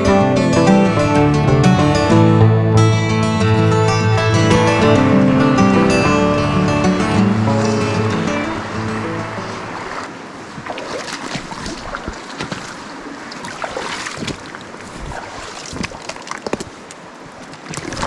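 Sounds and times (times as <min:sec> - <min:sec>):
brook water rushing: 0:00.0 - 0:10.4.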